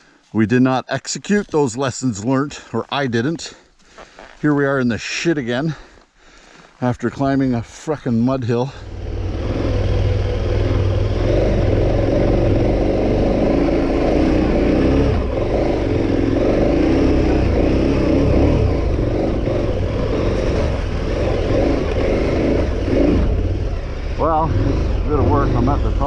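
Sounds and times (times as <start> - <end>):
motorcycle engine revving: 8.6 - 26.0.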